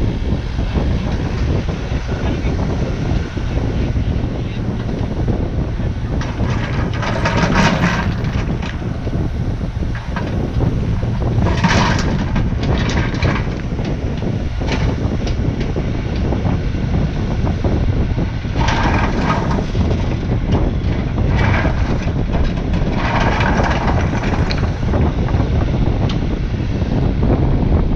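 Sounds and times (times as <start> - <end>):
excavator engine running: 0.0 - 27.9
rock scraping and grinding: 6.1 - 9.2, 9.9 - 13.9, 18.5 - 25.2.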